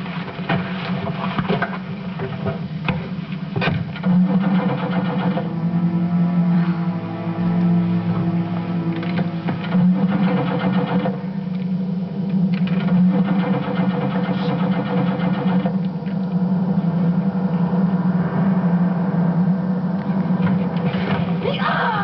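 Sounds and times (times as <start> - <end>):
starter motor cranking engine: 4.0 - 5.5.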